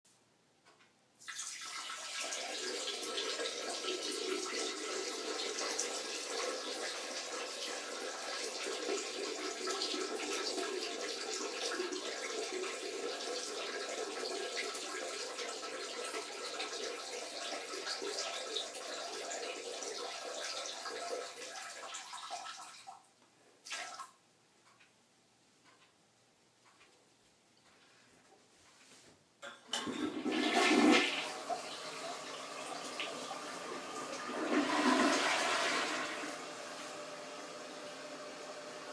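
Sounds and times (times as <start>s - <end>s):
urine splashing into toilet: 1.2s - 23.0s, 29.7s - 36.5s.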